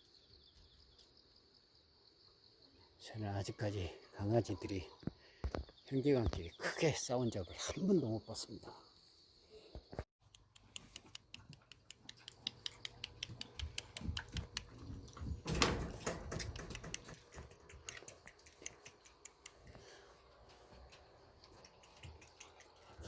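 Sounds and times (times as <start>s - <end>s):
light irregular clicks: 16.5s - 19.8s.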